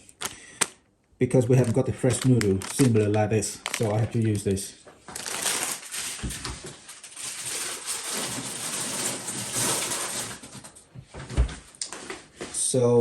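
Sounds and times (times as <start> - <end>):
packaging rustling and crinkling: 1.5 - 10.8.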